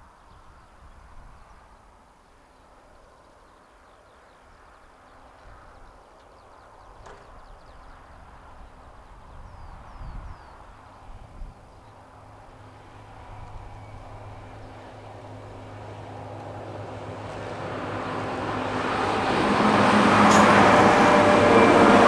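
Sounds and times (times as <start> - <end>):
low wind rumble: 4.5 - 22.0.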